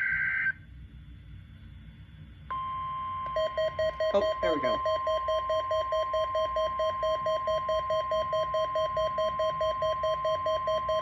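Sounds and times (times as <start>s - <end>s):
steady warning alarm tone: 0.0s - 0.6s, 2.5s - 11.0s
rapid low beeps: 2.5s - 11.0s.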